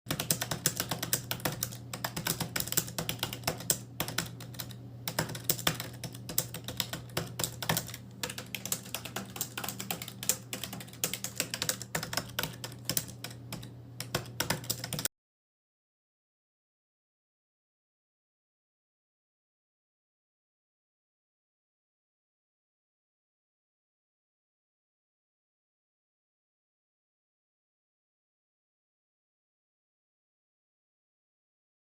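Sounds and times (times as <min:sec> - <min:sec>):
faint low hum: 0:00.1 - 0:15.1
fast keyboard typing: 0:00.1 - 0:15.1.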